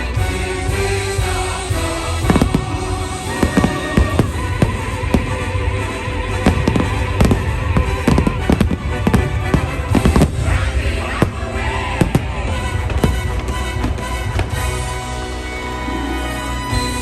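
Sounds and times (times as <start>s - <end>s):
fireworks bangs: 0.0s - 15.6s
orchestral music: 0.0s - 17.0s.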